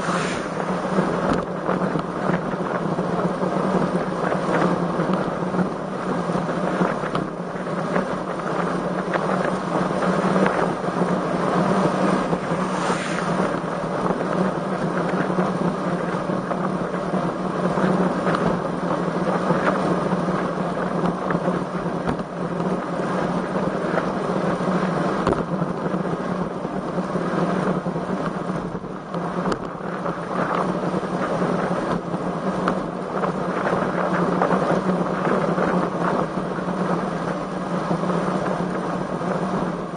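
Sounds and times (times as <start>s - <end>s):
low hum: 0.0s - 4.0s, 8.2s - 16.6s
wind buffeting microphone: 0.0s - 39.9s.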